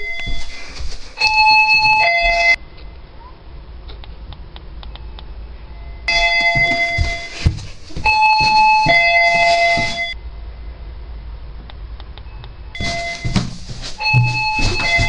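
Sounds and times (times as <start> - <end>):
dull thumps: 6.1 - 10.2, 12.8 - 15.0
electronic doorbell ding-dong: 14.0 - 15.0.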